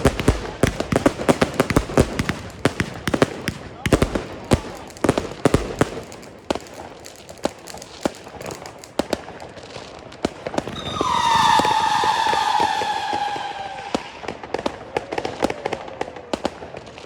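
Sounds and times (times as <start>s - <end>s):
fireworks bangs and crackling: 0.0s - 17.0s
whistling firework: 10.2s - 16.2s.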